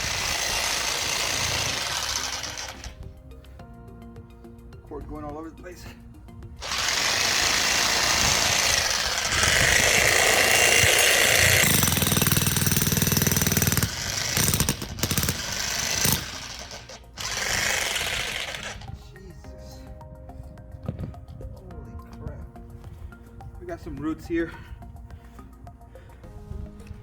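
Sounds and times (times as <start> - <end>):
jackhammer hammering into dirt: 0.0 - 3.0, 6.6 - 18.9.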